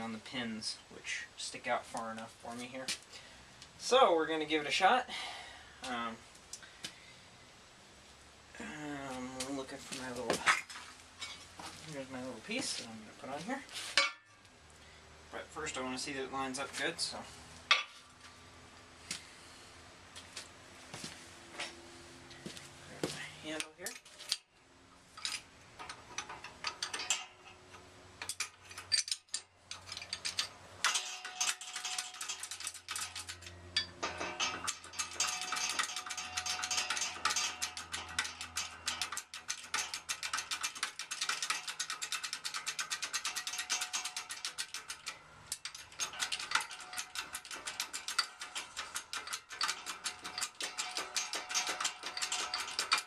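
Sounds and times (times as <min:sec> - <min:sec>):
shop press metal clicks and clanks: 0:25.2 - 0:53.0.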